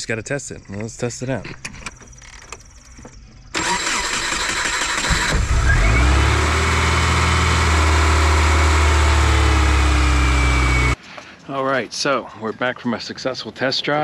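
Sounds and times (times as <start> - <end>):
car engine starting and idling: 2.9 - 11.0.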